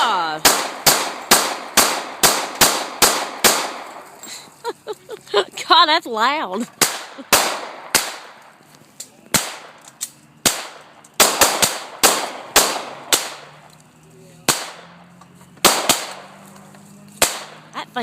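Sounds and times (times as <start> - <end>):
pistol shots with echo: 0.4 - 4.2, 6.8 - 8.5, 9.3 - 13.7, 14.4 - 16.4, 17.1 - 17.7.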